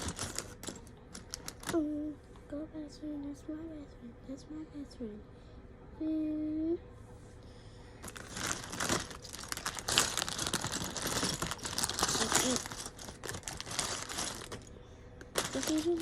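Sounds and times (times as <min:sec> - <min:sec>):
plastic pieces and packaging crinkling: 0:00.0 - 0:01.8, 0:08.0 - 0:16.0.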